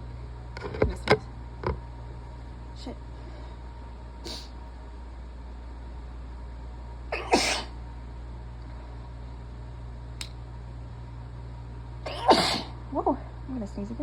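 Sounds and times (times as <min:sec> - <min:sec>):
person sneezing loudly: 0:07.2 - 0:07.7, 0:12.1 - 0:12.7.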